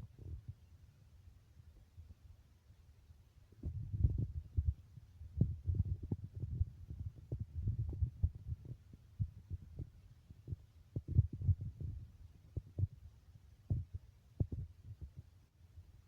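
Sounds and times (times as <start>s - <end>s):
low rumbling thumps: 3.6s - 13.0s, 13.7s - 15.2s.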